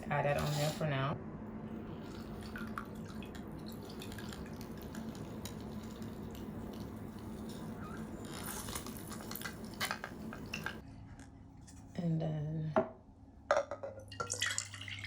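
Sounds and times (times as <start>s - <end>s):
juice dripping into jar: 2.0s - 10.8s, 14.0s - 15.0s.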